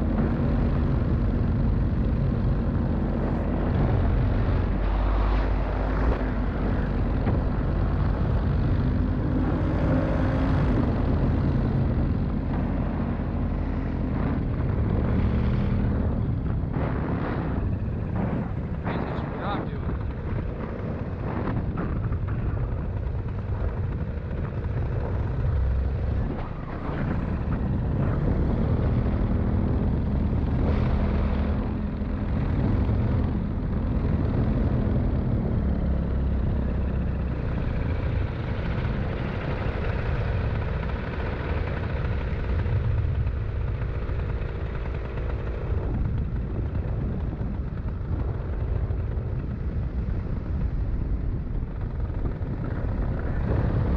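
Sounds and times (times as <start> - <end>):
small aircraft engine running: 0.0 - 53.9
wind noise: 0.0 - 53.9.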